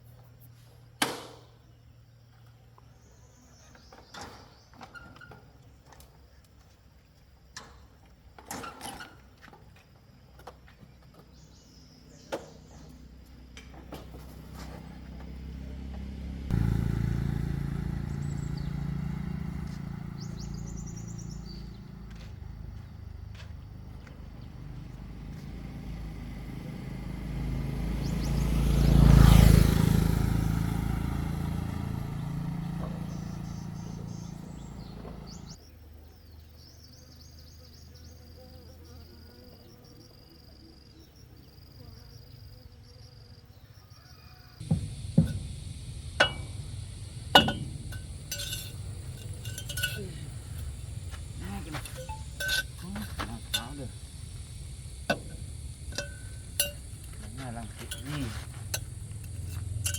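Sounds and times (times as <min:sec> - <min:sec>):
vehicle engine starting and running: 0:14.4 - 0:35.6, 0:44.6 - 0:59.9
bird chirps: 0:17.8 - 0:22.2, 0:32.8 - 0:35.6, 0:44.0 - 0:59.9
knocks: 0:44.6 - 0:48.0.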